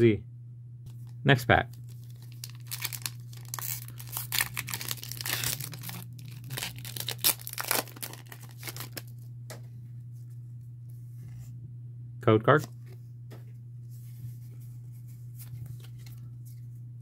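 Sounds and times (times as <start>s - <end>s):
foil wrapper tearing and crinkling: 1.7s - 9.2s.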